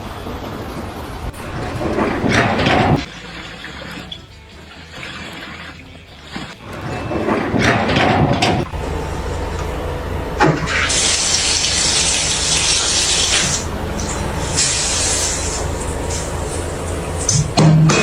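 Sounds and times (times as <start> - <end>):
low machine rumble: 0.0 - 18.0
hissing spray: 9.0 - 18.0.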